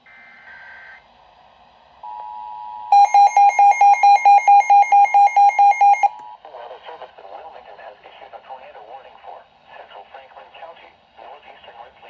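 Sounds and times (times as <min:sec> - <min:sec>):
steady two-tone alert: 0:02.9 - 0:06.2
rapid electronic beeping: 0:03.0 - 0:06.1.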